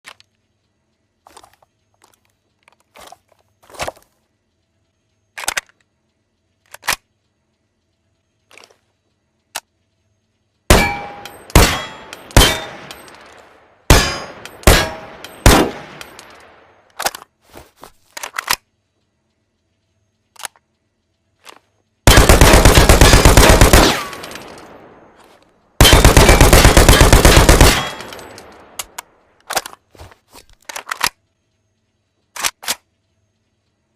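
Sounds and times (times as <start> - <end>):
weapon handling clicks: 5.3 - 7.2, 18.0 - 18.8, 20.3 - 20.8, 27.3 - 31.3, 32.2 - 33.0
single gunshots: 10.7 - 13.2, 13.9 - 16.6, 22.1 - 24.9, 25.8 - 28.8
automatic gunfire bursts: 22.1 - 24.3, 25.8 - 28.2.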